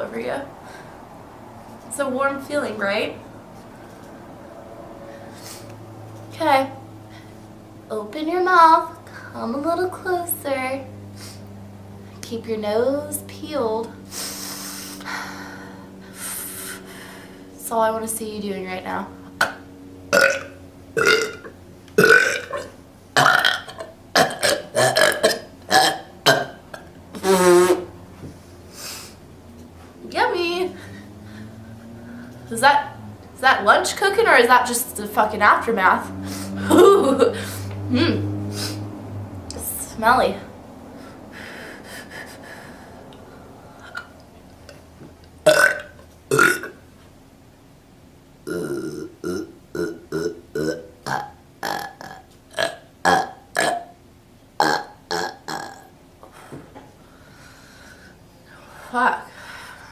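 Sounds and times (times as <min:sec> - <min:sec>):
woman burping: 0:19.4 - 0:27.8, 0:36.6 - 0:38.3, 0:43.8 - 0:44.2, 0:45.5 - 0:46.8, 0:48.4 - 0:53.9, 0:54.6 - 0:55.9.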